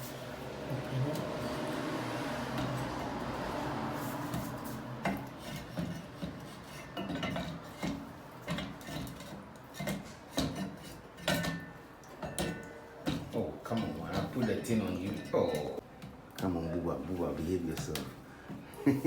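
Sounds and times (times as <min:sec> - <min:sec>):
metal tools clinking and scraping: 0:05.1 - 0:15.8.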